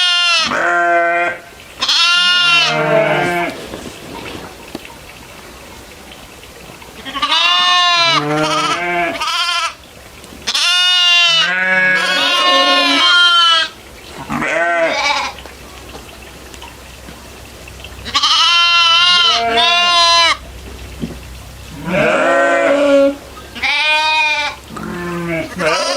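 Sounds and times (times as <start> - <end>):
goat bleating: 0.0 - 3.6, 7.0 - 9.8, 10.5 - 15.4, 18.0 - 20.4, 21.8 - 25.9.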